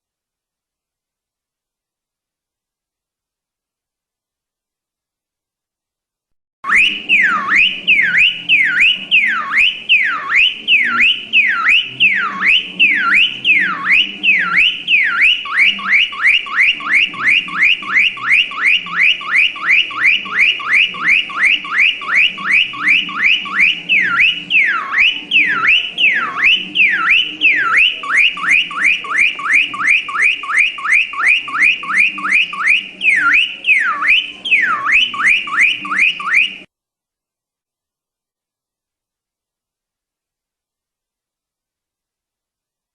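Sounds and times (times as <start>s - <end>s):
car alarm siren: 6.6s - 36.7s.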